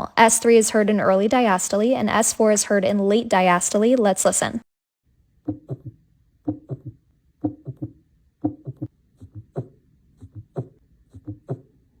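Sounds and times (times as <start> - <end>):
heartbeat in gallop rhythm: 5.5 - 11.7.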